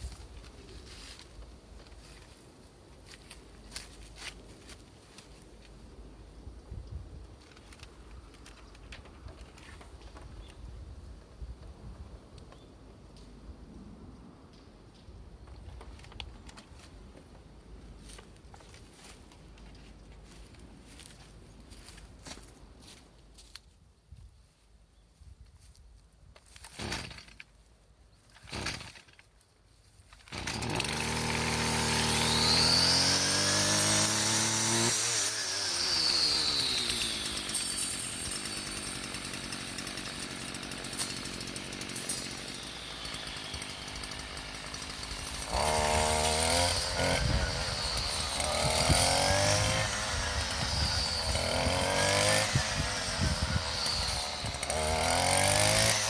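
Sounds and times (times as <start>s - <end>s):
chainsaw engine revving: 30.3s - 56.0s.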